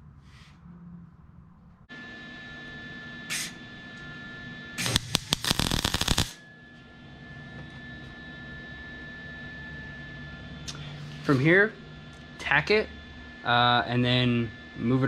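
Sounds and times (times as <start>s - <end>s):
steady hum with high tone: 0.0s - 15.0s
welding arc crackling: 4.8s - 6.4s.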